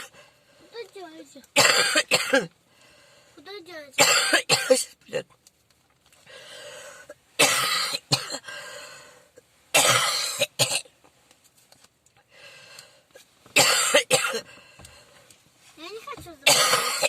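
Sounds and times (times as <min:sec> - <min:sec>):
man coughing: 0:01.6 - 0:02.5, 0:04.0 - 0:05.2, 0:07.4 - 0:08.5, 0:09.8 - 0:10.8, 0:13.6 - 0:14.5, 0:16.5 - 0:17.0.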